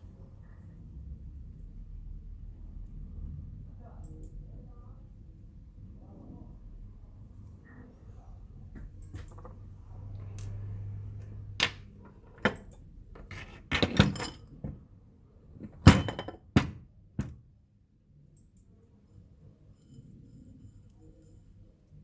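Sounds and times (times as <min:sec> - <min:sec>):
hard objects knocking: 0:11.6 - 0:14.9, 0:15.6 - 0:17.5.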